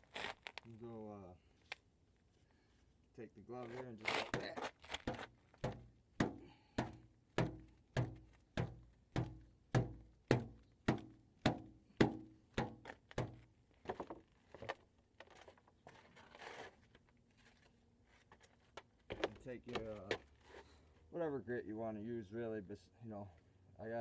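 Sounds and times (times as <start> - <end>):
dull thunks: 4.4 - 13.5
light irregular knocks: 4.4 - 14.2.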